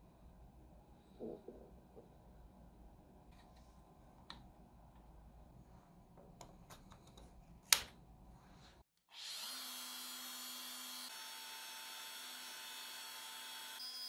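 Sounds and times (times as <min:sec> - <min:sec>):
power tool motor whining: 0:09.1 - 0:14.0.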